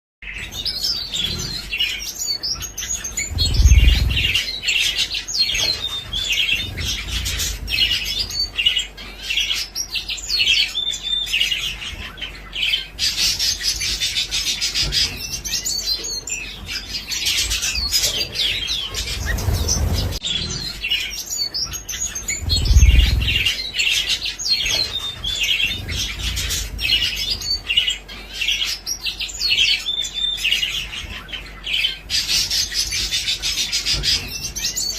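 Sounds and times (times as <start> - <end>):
finches chirping: 0.2 - 34.9
low bumps: 3.2 - 4.5, 22.3 - 23.6.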